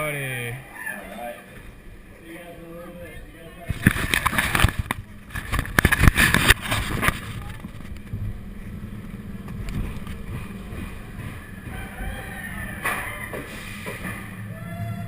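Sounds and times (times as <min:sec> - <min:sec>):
roller coaster rumbling: 0:00.0 - 0:15.0
roller coaster clanking: 0:03.7 - 0:15.0.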